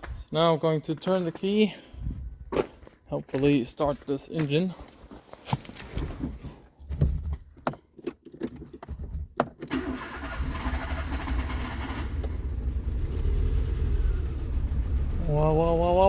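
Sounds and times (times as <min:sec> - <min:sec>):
car engine cranking and starting: 0:08.2 - 0:16.0.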